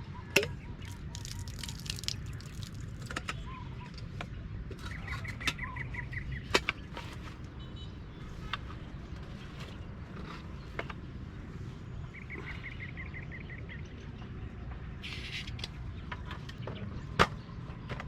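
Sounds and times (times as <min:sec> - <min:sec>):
bird calls: 0:00.0 - 0:11.0.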